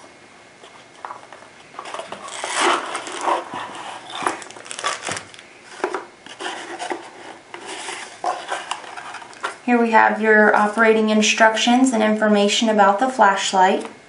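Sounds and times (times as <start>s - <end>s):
cardboard packaging rustling: 0.6s - 9.6s.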